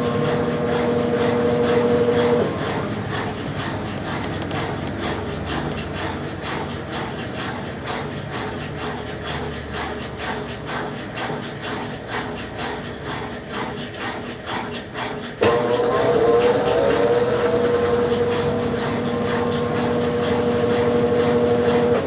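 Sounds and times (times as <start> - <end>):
motor hum rising in pitch: 0.0 - 6.7
washing machine sloshing water: 0.0 - 22.0.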